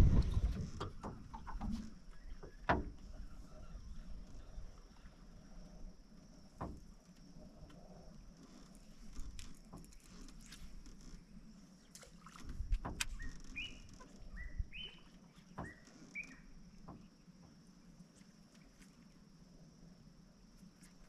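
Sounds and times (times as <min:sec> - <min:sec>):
high insect hum: 0:00.0 - 0:21.0
bird whistling calls: 0:13.2 - 0:16.5.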